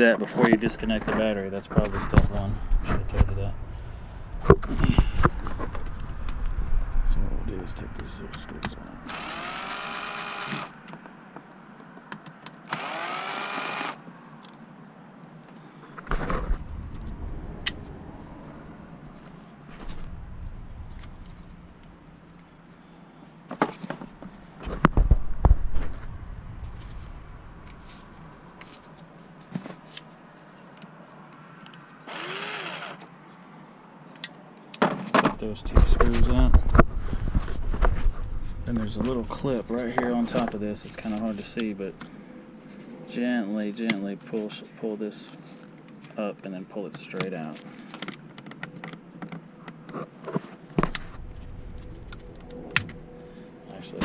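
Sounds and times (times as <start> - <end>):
power drill whining: 8.8 - 10.7, 12.7 - 14.0, 31.9 - 33.0.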